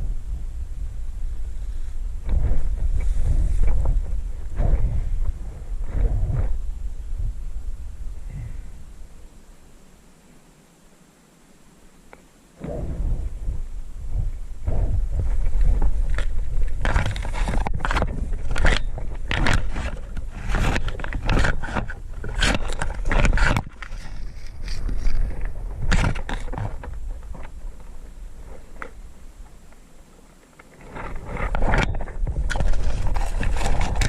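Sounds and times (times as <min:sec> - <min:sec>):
low microphone rumble: 0:00.0 - 0:10.0, 0:12.6 - 0:29.7
scraping and rustling through brush: 0:00.0 - 0:34.0.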